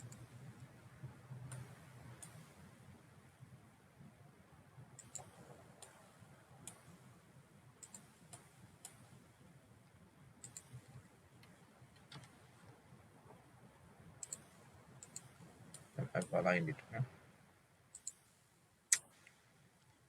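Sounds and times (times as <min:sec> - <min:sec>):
computer mouse clicks: 0:00.0 - 0:00.8, 0:01.4 - 0:02.7, 0:05.0 - 0:07.1, 0:07.8 - 0:09.3, 0:10.4 - 0:12.8, 0:14.2 - 0:16.4, 0:17.9 - 0:19.4.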